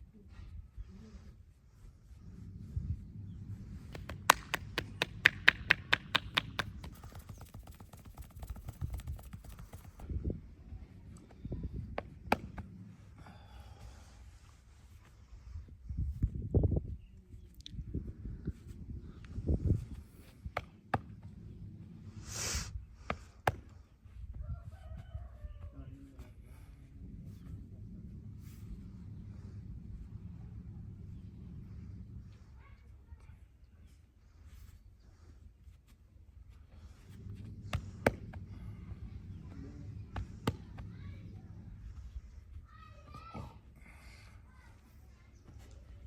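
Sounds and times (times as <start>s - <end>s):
hand taps on body: 3.9s - 9.9s.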